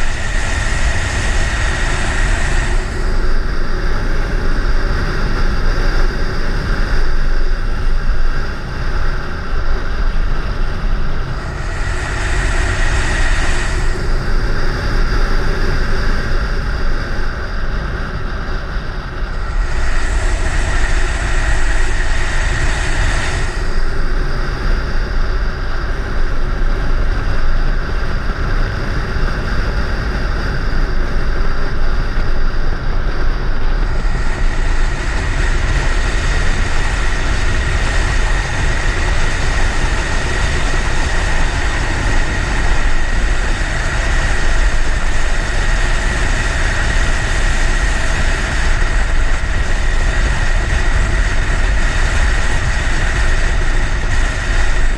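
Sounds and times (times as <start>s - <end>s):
wind rushing over microphone: 0.0s - 54.9s.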